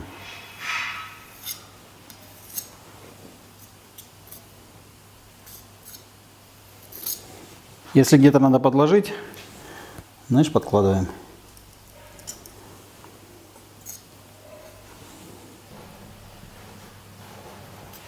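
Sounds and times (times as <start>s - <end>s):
blade scraping and clicking: 1.4s - 2.8s, 3.6s - 4.5s, 5.4s - 6.1s, 6.8s - 7.2s, 13.8s - 14.1s.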